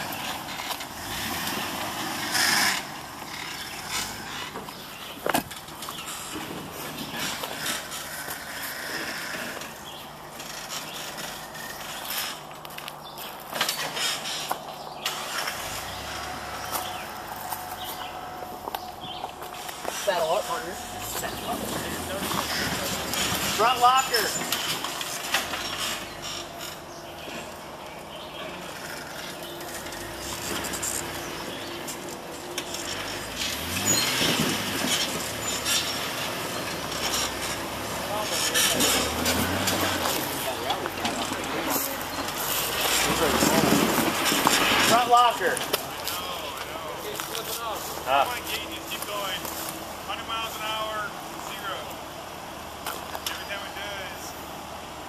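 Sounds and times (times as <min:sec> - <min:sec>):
off-road vehicle engine running: 0:00.0 - 0:55.0
rocks scraping and knocking: 0:16.6 - 0:27.5, 0:28.6 - 0:49.8.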